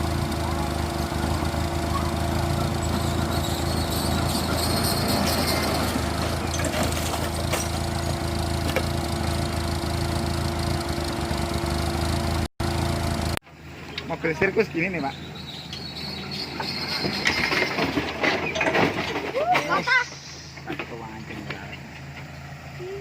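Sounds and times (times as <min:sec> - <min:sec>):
engine running steadily: 0:00.0 - 0:23.0.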